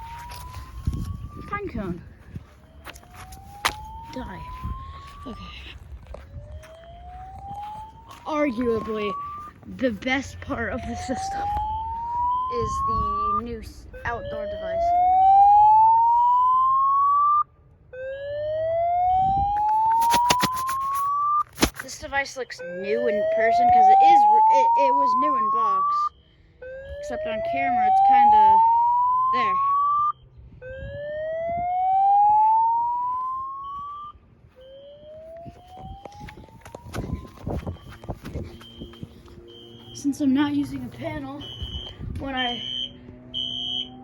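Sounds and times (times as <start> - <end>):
fire alarm whoop tone: 0.0 - 9.6, 10.5 - 21.5, 22.4 - 40.4, 41.0 - 44.0
faint high beep: 33.2 - 35.0, 37.5 - 40.3, 41.0 - 44.0.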